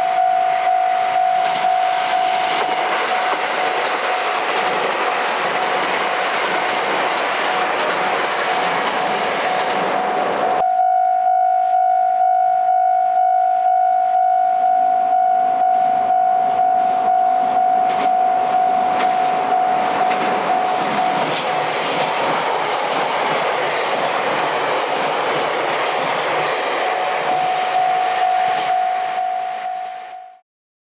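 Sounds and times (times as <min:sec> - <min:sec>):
crossing warning bell ringing: 0:00.0 - 0:05.6, 0:10.0 - 0:30.4
train wheels clattering over rail joints: 0:02.3 - 0:10.4, 0:18.9 - 0:27.0.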